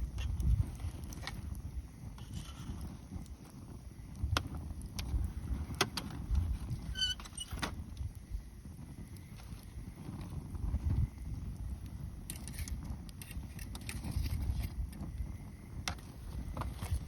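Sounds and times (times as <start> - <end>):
bonfire crackling: 0.0 - 17.0
high-pitched squeak: 6.9 - 7.6.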